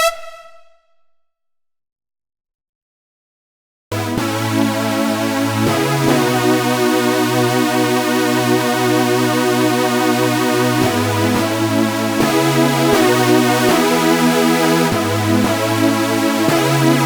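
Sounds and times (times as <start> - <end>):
synthesizer chords over bass notes: 4.0 - 17.0.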